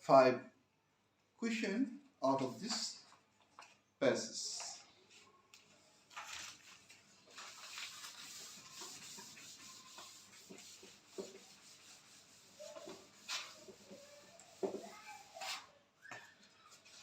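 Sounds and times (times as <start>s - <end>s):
handwriting scratching: 7.4s - 15.7s.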